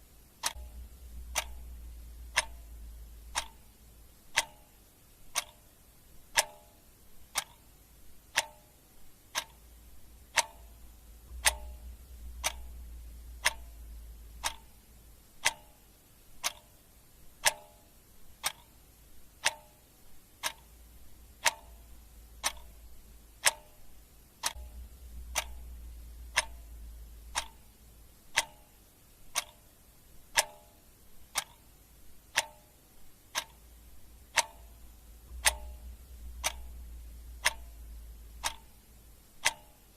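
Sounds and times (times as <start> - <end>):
clock ticking: 0.0 - 39.9.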